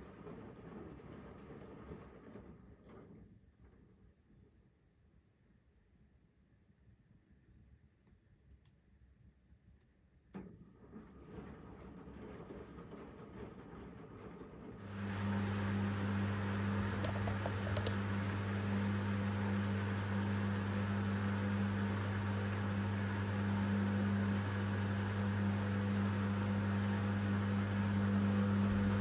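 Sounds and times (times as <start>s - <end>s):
washing machine humming: 11.2s - 29.0s.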